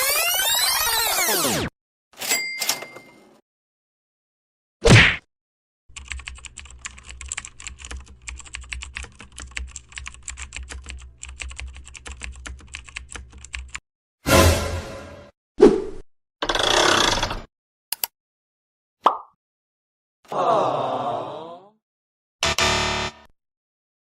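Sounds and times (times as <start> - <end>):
keyboard typing clicks: 17.9 - 18.1.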